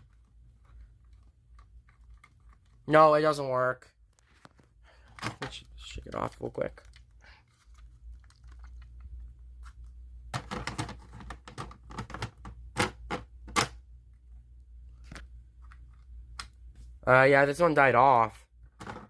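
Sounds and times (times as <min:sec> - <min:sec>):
plastic clicks and knocks: 0:10.3 - 0:13.8.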